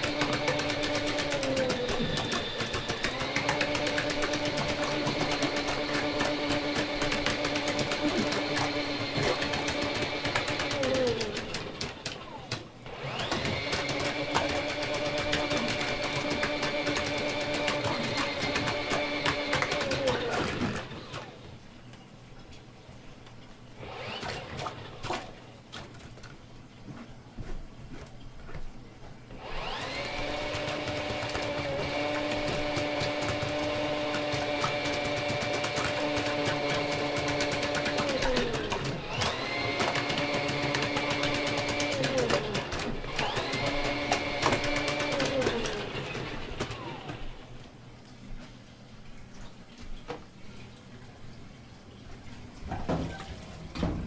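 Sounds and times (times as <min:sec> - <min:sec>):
rapid machine clicking: 0:00.0 - 0:20.4
motor machine humming: 0:00.0 - 0:21.5.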